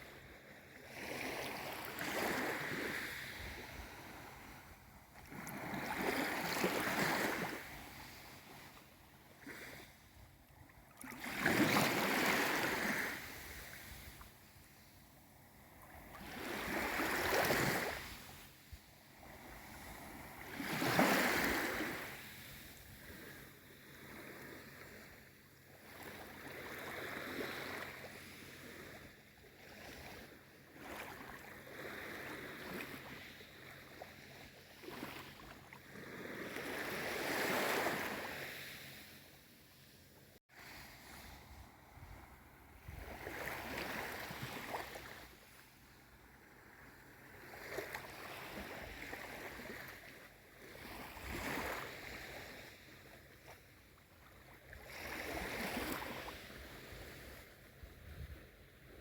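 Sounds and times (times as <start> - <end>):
small sea waves lapping: 0.0 - 59.0.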